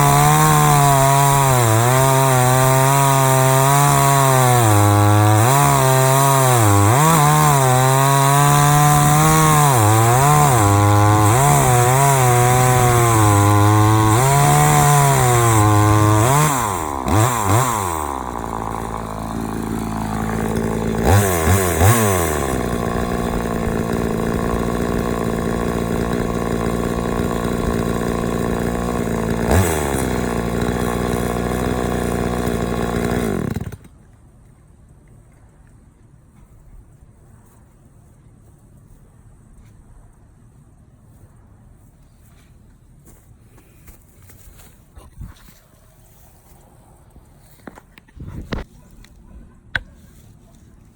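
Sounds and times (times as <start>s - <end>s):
chainsaw cutting and revving: 0.0s - 33.9s.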